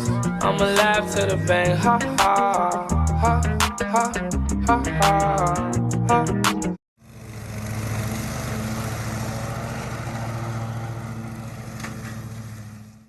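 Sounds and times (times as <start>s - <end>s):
small engine running: 7.0s - 13.0s.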